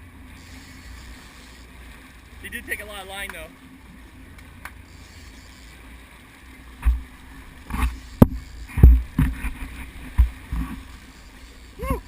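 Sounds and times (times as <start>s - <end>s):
knocks and thumps: 7.7s - 10.8s.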